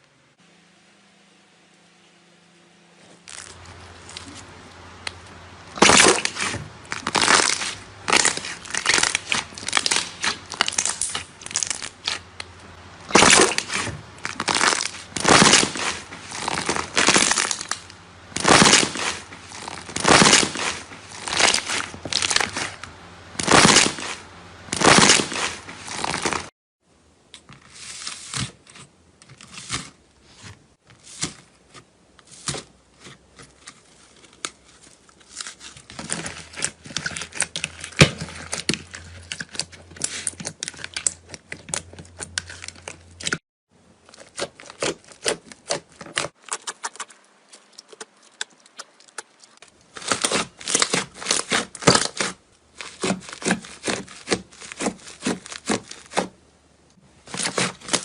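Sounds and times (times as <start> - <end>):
slime crackling and clicking: 44.1 - 52.4.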